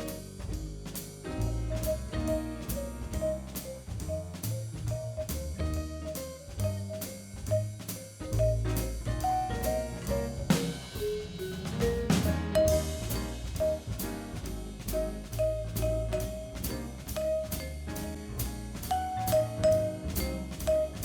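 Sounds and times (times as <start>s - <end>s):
bass line: 0.0s - 21.0s
drum kit beat: 0.0s - 21.0s
melody notes: 8.4s - 14.0s, 18.9s - 21.0s.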